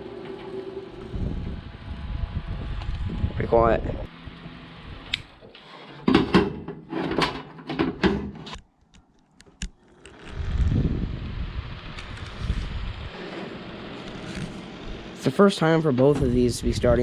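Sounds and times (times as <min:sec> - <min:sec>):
fan running: 0:00.0 - 0:08.6, 0:09.7 - 0:17.0
appliance handling clatter: 0:05.8 - 0:08.5.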